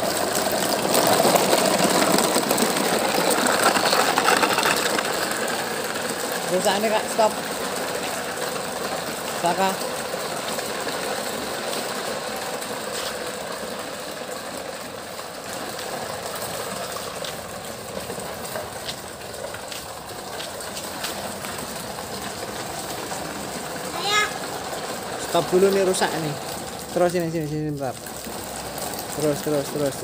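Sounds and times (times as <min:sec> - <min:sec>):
small electric toy motor running: 0:00.0 - 0:08.6.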